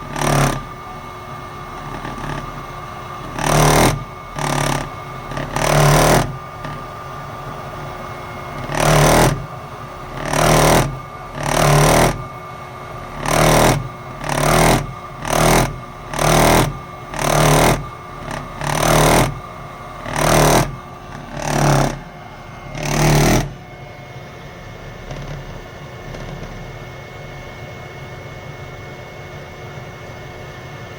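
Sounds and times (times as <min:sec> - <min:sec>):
boiler rattling pulses: 0:00.0 - 0:23.9
steady hum: 0:00.0 - 0:30.9.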